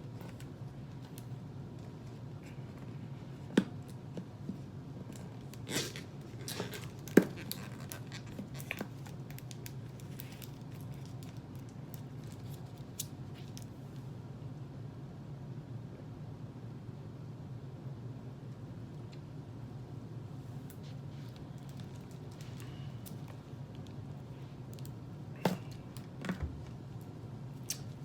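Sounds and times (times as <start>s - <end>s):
low steady hum: 0.0s - 28.0s
plastic bottle crinkle: 5.4s - 13.7s.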